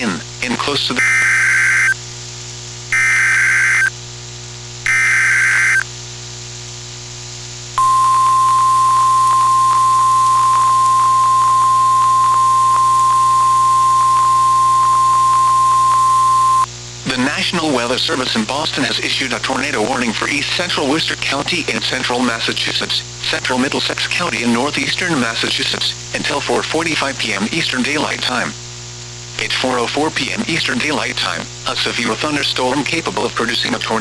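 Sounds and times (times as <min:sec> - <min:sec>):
faint static crackles: 0:00.0 - 0:34.0
radio hiss: 0:00.0 - 0:34.0
buzzy digital data bursts: 0:00.7 - 0:02.0, 0:02.9 - 0:04.0, 0:04.9 - 0:05.8, 0:07.8 - 0:16.7
steady warning alarm tone: 0:01.0 - 0:02.0, 0:02.9 - 0:03.9, 0:04.9 - 0:05.8, 0:07.8 - 0:16.7.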